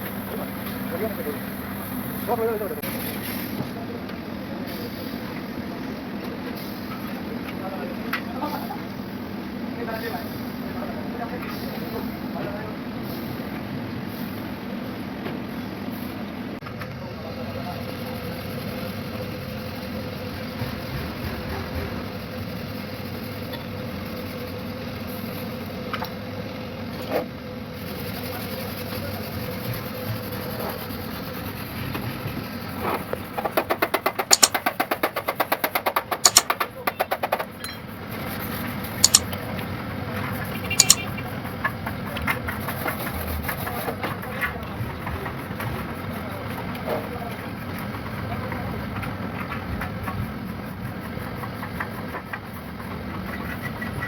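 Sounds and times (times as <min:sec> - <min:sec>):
rapid light taps: 0:34.3 - 0:34.6, 0:36.3 - 0:36.5, 0:39.0 - 0:39.3, 0:40.8 - 0:41.0
sharp knocks: 0:34.3 - 0:34.6, 0:36.3 - 0:36.5, 0:40.8 - 0:41.0.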